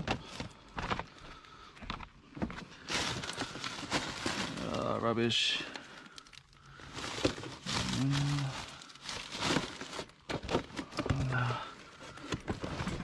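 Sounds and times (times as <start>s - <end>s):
junk rustling and knocking: 1.8s - 4.7s, 6.9s - 7.9s, 9.1s - 11.4s, 12.1s - 13.0s.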